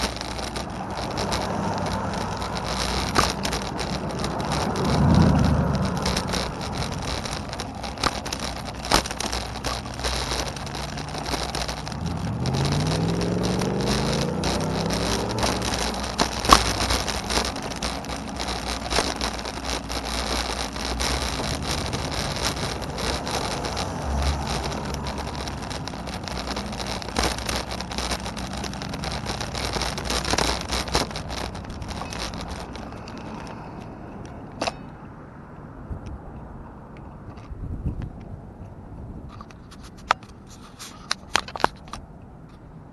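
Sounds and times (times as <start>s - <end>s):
car engine accelerating: 0.0s - 33.5s
road noise with crackles: 0.0s - 42.9s.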